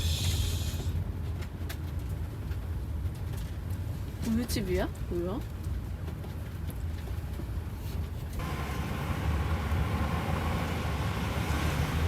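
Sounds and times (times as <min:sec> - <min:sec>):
motorhome rumble: 0:08.4 - 0:12.0.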